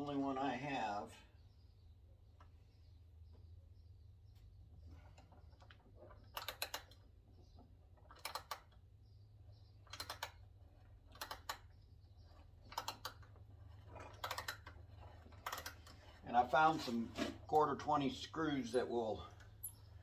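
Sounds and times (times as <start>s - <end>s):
sharp clicks of hand threading: 5.2s - 7.1s, 8.0s - 8.9s, 9.8s - 16.1s.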